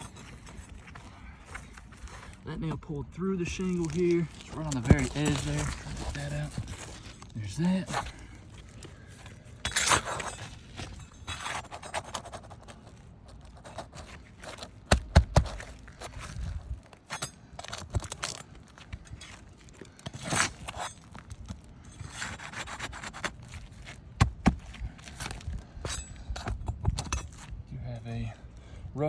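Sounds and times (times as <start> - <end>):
metal tool scraping shingles: 3.4 - 27.5.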